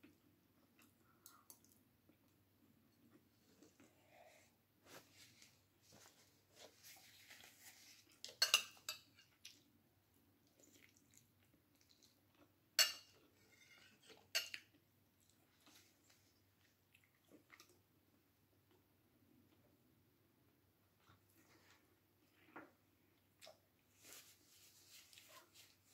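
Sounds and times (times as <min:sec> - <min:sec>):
faint handling sounds: 0:02.9 - 0:09.3, 0:23.8 - 0:25.9
cutlery clinking on plate: 0:08.3 - 0:09.3, 0:12.8 - 0:14.7.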